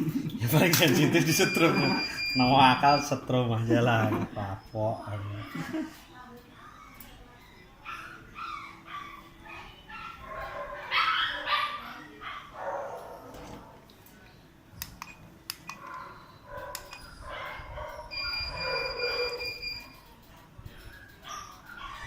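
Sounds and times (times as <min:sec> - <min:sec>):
dog whining and yelping: 0:07.6 - 0:10.3, 0:15.9 - 0:19.8, 0:21.0 - 0:22.0.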